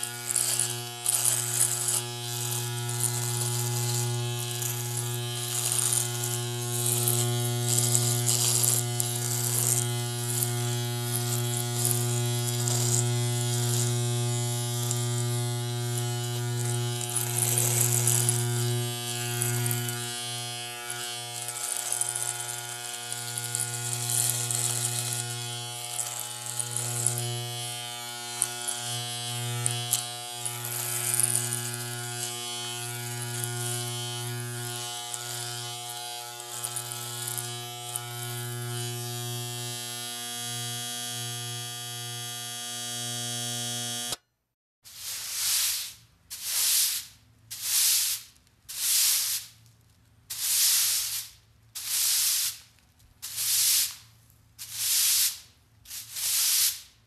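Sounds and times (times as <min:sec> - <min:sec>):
electric razor buzzing: 0:00.0 - 0:44.2.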